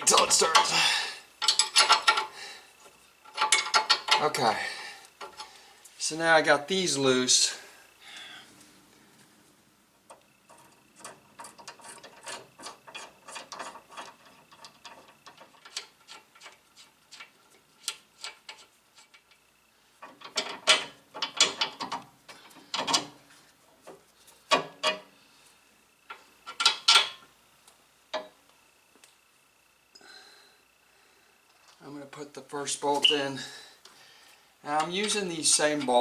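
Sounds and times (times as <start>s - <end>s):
metallic clanks: 0.0s - 2.4s, 3.2s - 4.4s
ratchet wrench clicking: 1.4s - 2.4s.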